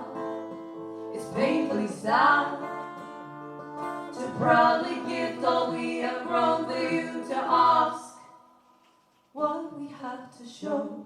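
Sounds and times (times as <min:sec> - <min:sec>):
acoustic guitar: 0:00.0 - 0:11.0
women singing in harmony: 0:01.1 - 0:03.0, 0:04.0 - 0:08.4, 0:09.4 - 0:11.0.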